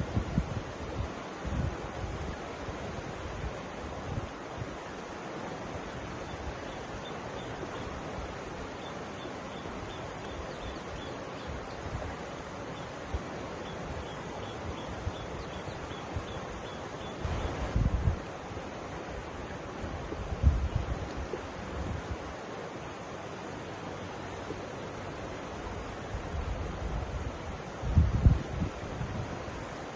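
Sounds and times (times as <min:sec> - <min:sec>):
wind buffeting microphone: 0:00.0 - 0:04.3, 0:13.9 - 0:18.3, 0:19.8 - 0:22.3, 0:26.1 - 0:29.6
river water rushing: 0:00.0 - 0:29.9.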